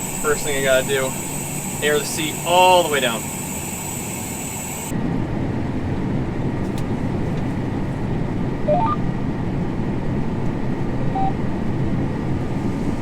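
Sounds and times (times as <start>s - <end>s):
combine harvester running: 0.0s - 13.0s
electronic beeps: 8.7s - 9.0s, 11.0s - 11.4s.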